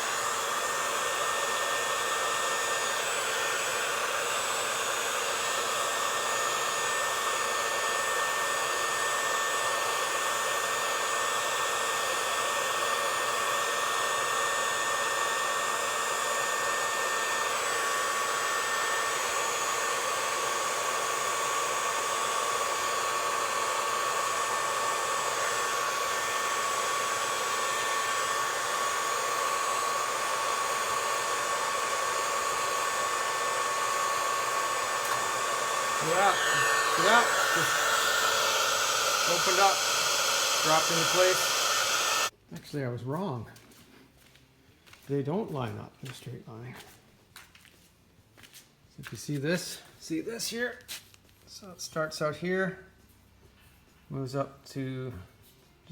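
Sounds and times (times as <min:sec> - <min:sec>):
heat tool blowing hiss: 0:00.0 - 0:42.3.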